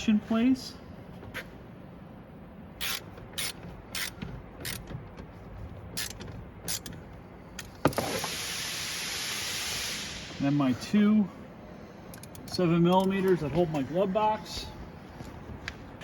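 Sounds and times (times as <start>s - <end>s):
ratchet clicking: 2.8s - 5.2s, 6.0s - 7.0s, 12.1s - 13.2s
steady hiss: 7.9s - 11.8s.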